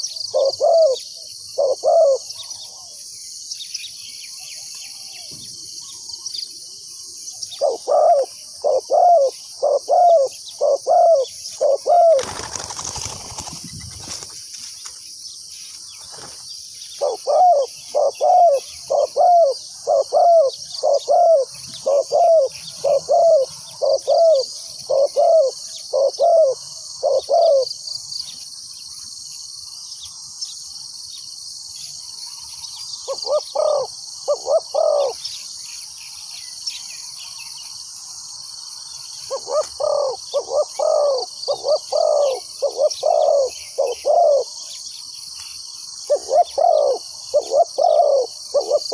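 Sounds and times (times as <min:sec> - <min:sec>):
doves cooing: 0:00.0 - 0:02.3, 0:07.6 - 0:14.4, 0:17.0 - 0:27.7, 0:33.1 - 0:35.2, 0:39.3 - 0:44.6, 0:46.1 - 0:48.9
high-pitched insect drone: 0:05.9 - 0:48.9.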